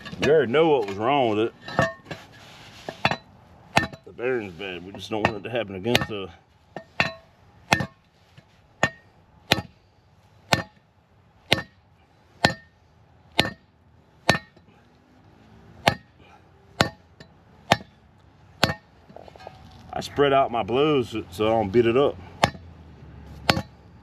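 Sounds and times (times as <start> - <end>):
hammer striking steel: 3.0 - 4.1, 5.0 - 6.2, 6.8 - 8.0, 8.8 - 9.8, 10.5 - 10.8, 11.5 - 11.8, 12.4 - 14.7, 15.8 - 16.1, 16.8 - 18.0, 18.6 - 18.9, 22.4 - 22.7, 23.4 - 23.8.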